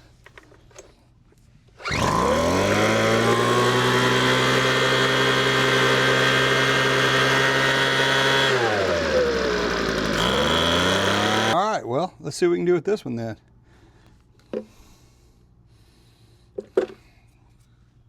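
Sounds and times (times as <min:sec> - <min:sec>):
starter cord pull: 0:01.8 - 0:11.6
two-stroke leaf blower engine running: 0:01.8 - 0:11.6.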